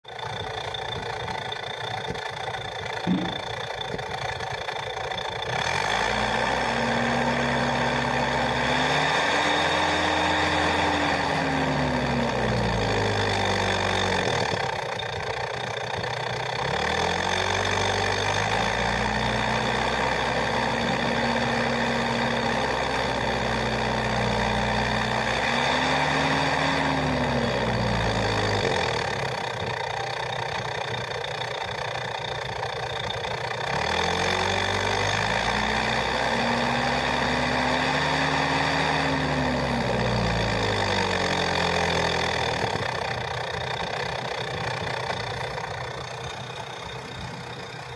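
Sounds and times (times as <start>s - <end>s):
car engine revving and idling: 0.2s - 47.9s.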